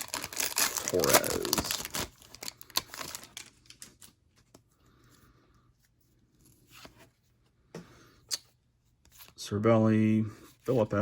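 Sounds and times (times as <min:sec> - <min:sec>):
foil card pack rustling: 0:00.0 - 0:04.3
soft foil crinkle: 0:00.0 - 0:05.1.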